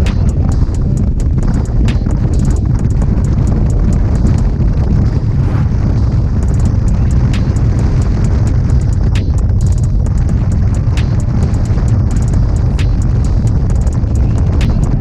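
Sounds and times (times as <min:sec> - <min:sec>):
scooter engine running: 0:00.0 - 0:15.0
wind rushing over microphone: 0:00.0 - 0:15.0.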